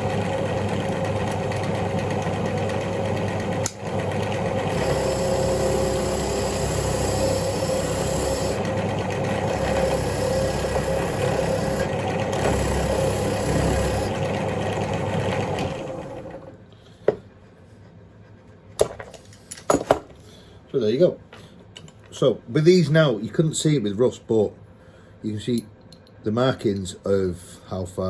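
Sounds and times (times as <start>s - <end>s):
power tool grinding rust: 0.0s - 16.4s.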